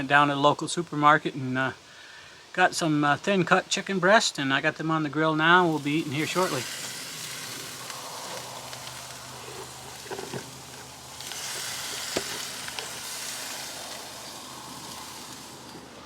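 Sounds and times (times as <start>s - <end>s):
chicken sizzling on a grill: 5.4s - 16.0s.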